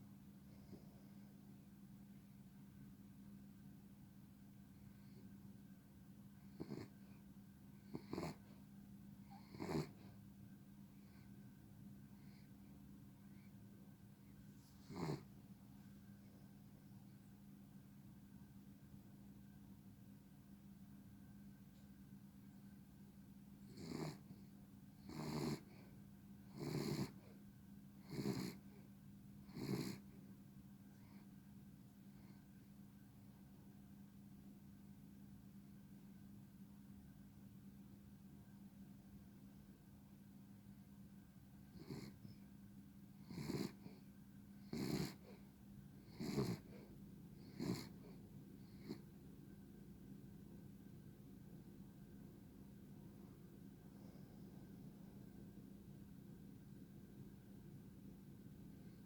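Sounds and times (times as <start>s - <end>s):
faint steady hum: 0.0s - 59.0s
dog snoring: 6.5s - 7.2s, 7.8s - 8.6s, 9.2s - 10.2s, 14.8s - 15.3s, 23.6s - 24.4s, 25.0s - 27.4s, 28.0s - 28.8s, 29.4s - 30.2s, 41.7s - 42.4s, 43.2s - 44.0s, 44.6s - 45.4s, 46.0s - 49.2s.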